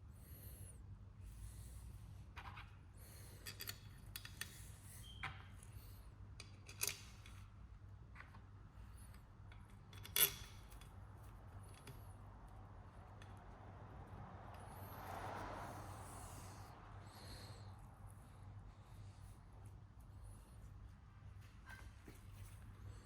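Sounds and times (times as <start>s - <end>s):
small metal parts clinking: 9.5s - 11.0s.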